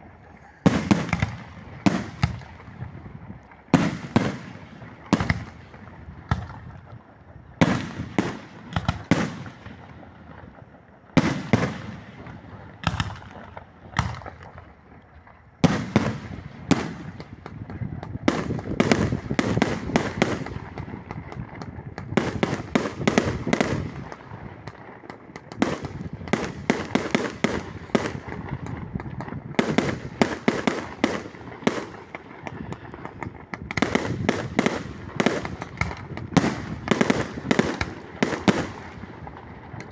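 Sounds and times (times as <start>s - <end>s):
fireworks bangs and crackle: 0.0s - 39.9s.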